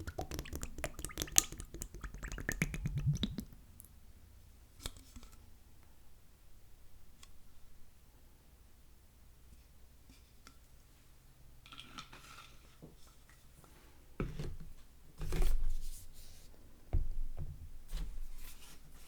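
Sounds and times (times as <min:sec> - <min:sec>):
thick wet glugs of gel: 0:00.0 - 0:03.6.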